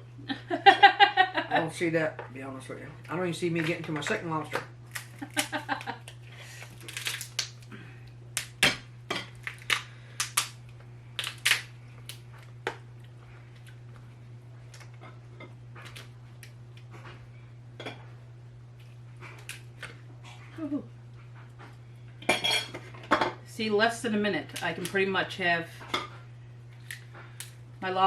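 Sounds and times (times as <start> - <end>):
lobster shells cracking: 3.5 - 13.9, 15.8 - 16.9, 18.8 - 20.0, 26.7 - 27.6.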